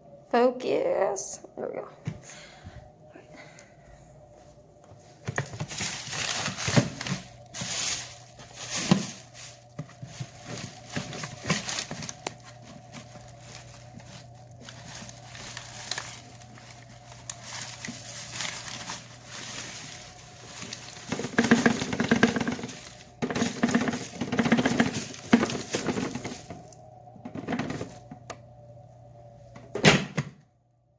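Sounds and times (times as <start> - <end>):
faint steady hum: 0.0 - 30.9
debris crunching and crackling: 5.3 - 26.7.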